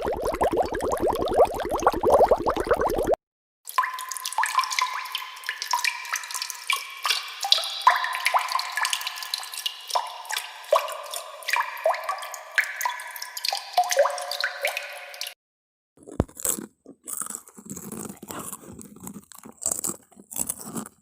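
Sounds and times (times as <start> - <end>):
water bubbles plopping: 0.0 - 3.2.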